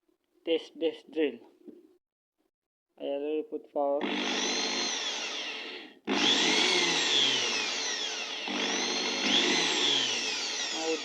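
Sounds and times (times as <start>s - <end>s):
electric drill motor whining: 4.0s - 11.0s.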